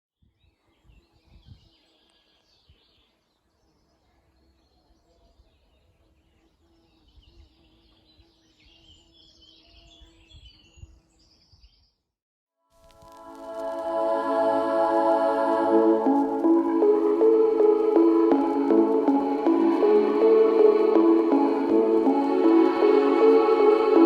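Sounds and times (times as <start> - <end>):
small birds chirping: 0.4 - 12.0.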